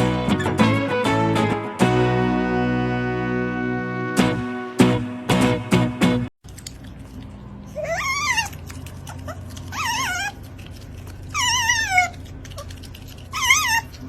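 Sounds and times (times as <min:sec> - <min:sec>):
dog whining: 0:07.7 - 0:10.4, 0:11.3 - 0:14.0.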